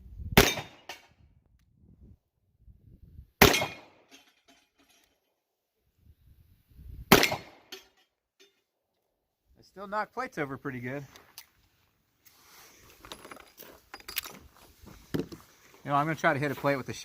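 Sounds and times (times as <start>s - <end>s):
revolver gunshots: 0.4s - 0.9s, 3.4s - 4.0s, 7.1s - 7.7s.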